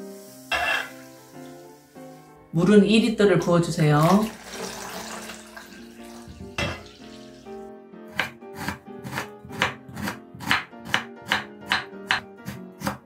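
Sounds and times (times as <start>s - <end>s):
soft background music: 0.0s - 13.0s
knife chopping on cutting board: 8.1s - 13.0s.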